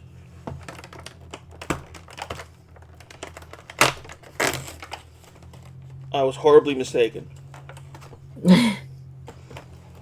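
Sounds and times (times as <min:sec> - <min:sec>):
packaging clicking and rustling: 0:00.5 - 0:06.0.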